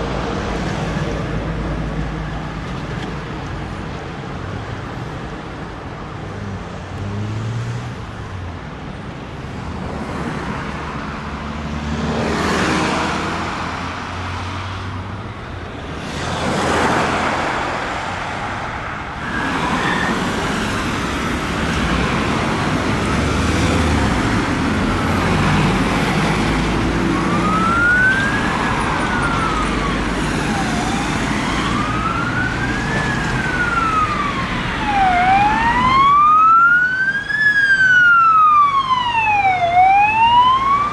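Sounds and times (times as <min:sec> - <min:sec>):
city traffic: 0:00.0 - 0:40.9
vehicles passing by: 0:00.0 - 0:40.9
emergency vehicle siren wailing: 0:19.1 - 0:40.9.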